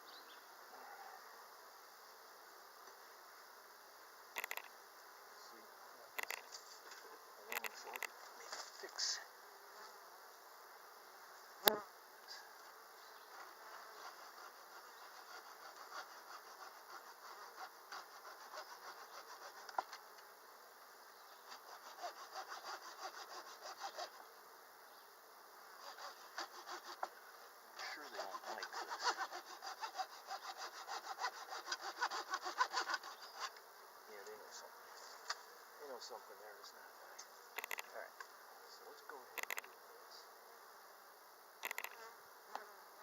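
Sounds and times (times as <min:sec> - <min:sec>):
bees buzzing: 0:01.7 - 0:43.0
tool scraping wooden beehive: 0:13.3 - 0:20.2, 0:21.4 - 0:24.2, 0:25.8 - 0:27.2, 0:27.8 - 0:34.3.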